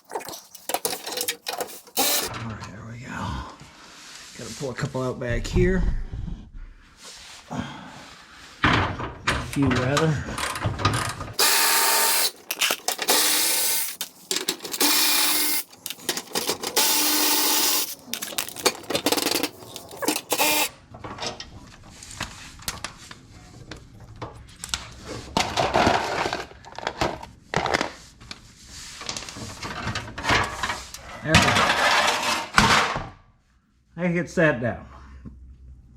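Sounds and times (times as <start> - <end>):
bolts and parts clicking: 0.0 - 2.3, 9.8 - 20.7
power tool spinning out bolts: 0.6 - 2.3, 11.4 - 20.7.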